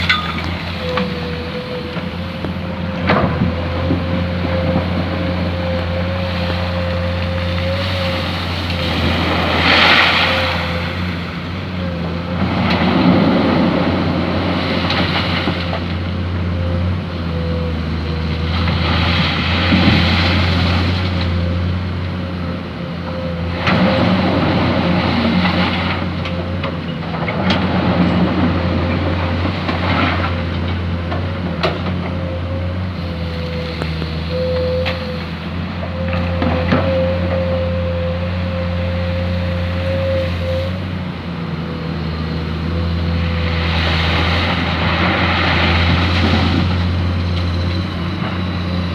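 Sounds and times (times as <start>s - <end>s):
thin steady whine: 0.0s - 12.3s
diesel engine under load: 0.0s - 48.9s
rushing noise of sand: 5.1s - 12.1s.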